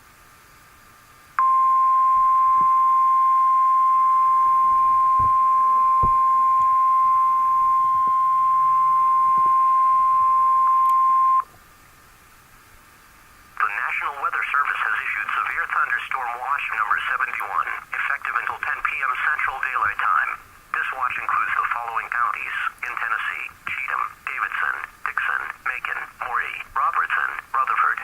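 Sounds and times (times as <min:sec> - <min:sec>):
steady warning alarm tone: 0:01.4 - 0:11.4.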